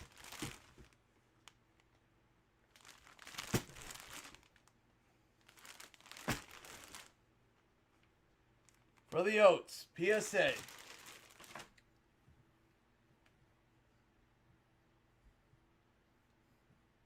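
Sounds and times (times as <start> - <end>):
plastic packaging crinkling: 0.0 - 1.6, 2.7 - 4.7, 5.4 - 7.2, 10.1 - 11.8.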